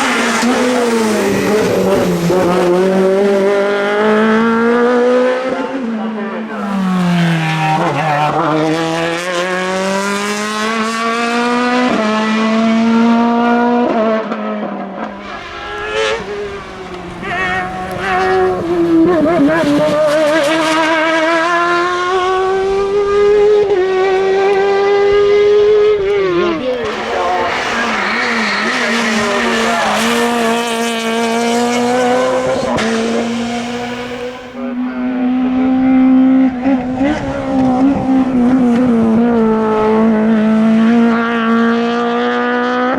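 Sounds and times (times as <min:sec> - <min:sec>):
rally car engine accelerating: 0:00.0 - 0:42.9
racing car engine running hard: 0:21.8 - 0:42.8.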